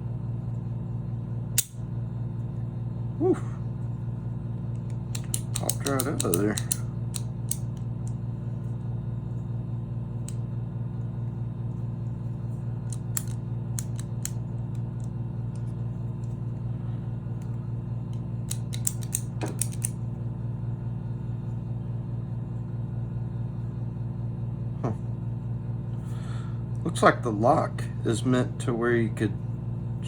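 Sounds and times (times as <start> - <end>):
low mechanical hum: 0.0 - 30.0
small metal parts clicking: 5.1 - 7.7, 18.5 - 19.9.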